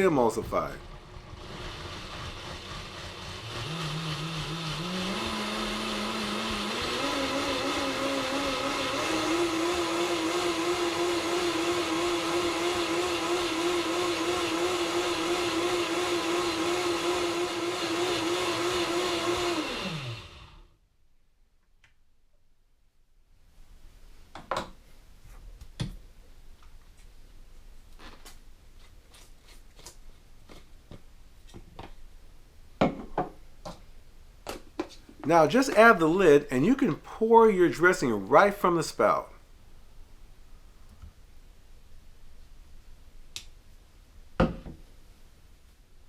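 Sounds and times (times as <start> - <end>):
blender motor whirring: 0.8 - 20.7.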